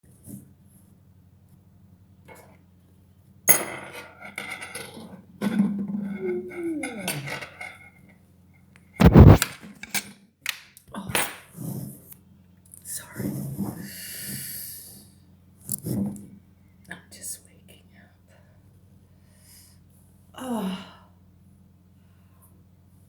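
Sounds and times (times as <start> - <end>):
dishes and cutlery clinking: 3.5 - 8.0
person yawning: 6.1 - 7.4.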